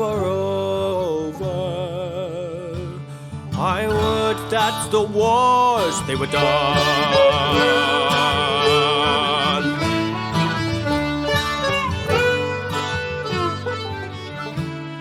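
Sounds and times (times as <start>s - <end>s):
acoustic guitar picking: 0.0s - 15.0s
fiddle melody: 3.7s - 15.0s.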